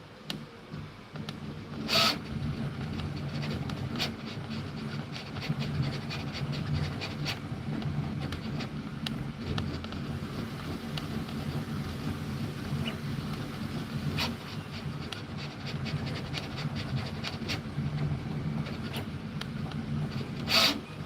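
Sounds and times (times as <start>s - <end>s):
printer motor hum: 0.0s - 21.0s.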